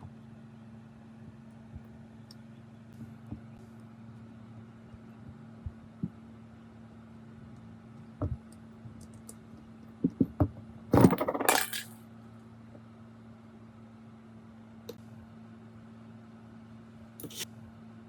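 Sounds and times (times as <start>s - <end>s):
steady low hum: 0.0s - 18.0s
small metal parts clinking: 11.0s - 12.0s.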